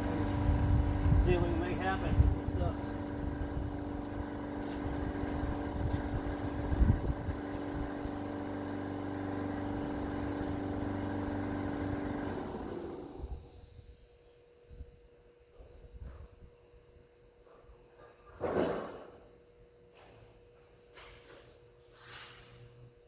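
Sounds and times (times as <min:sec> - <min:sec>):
motor humming: 0:00.0 - 0:14.0.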